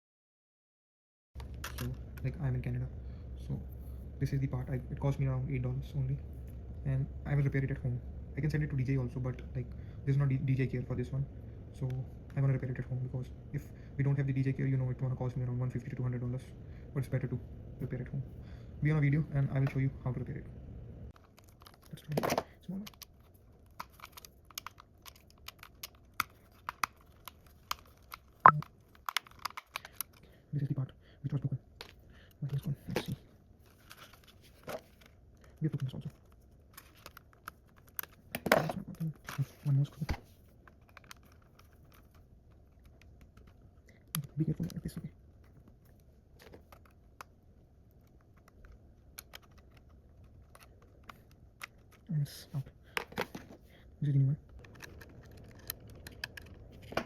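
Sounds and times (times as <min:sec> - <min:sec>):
screwdriver and plastic parts clicking: 0:21.2 - 0:30.2, 0:40.6 - 0:47.3, 0:47.9 - 0:52.1, 0:54.5 - 0:57.0.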